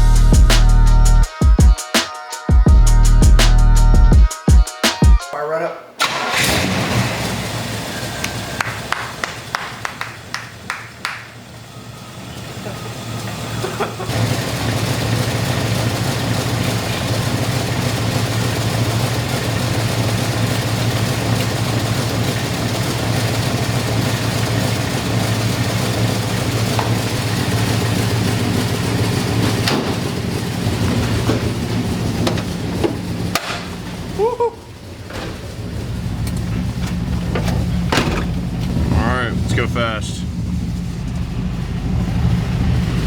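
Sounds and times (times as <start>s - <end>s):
car engine idling: 0.0s - 1.3s, 6.0s - 43.0s
sharp knocks: 32.2s - 33.8s.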